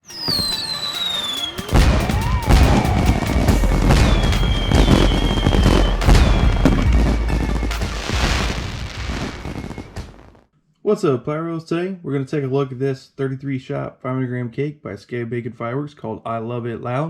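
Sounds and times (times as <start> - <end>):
firework bangs: 0.0 - 10.4
firework whistles: 0.0 - 10.4
music with heavy bass: 1.6 - 8.6.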